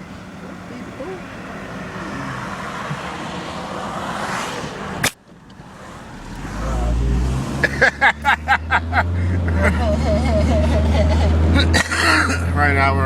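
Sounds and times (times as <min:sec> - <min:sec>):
car road and engine noise: 0:00.0 - 0:13.0
sharp click: 0:05.0 - 0:05.6.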